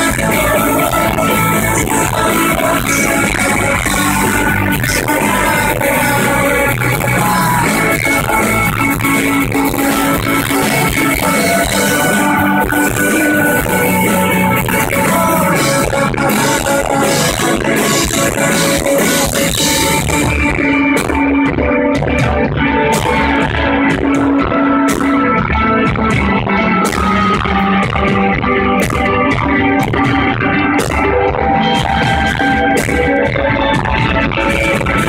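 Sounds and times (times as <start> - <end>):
live rock band playing: 0.0 - 35.0.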